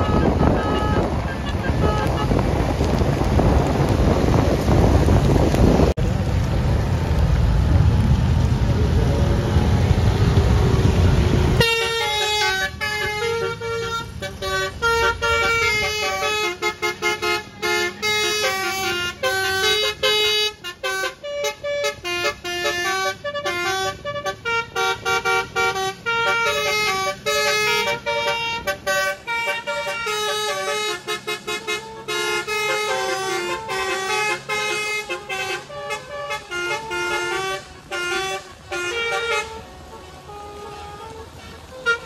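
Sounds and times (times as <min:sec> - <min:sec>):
musical vehicle horn melody: 0:00.0 - 0:02.5, 0:11.5 - 0:42.0.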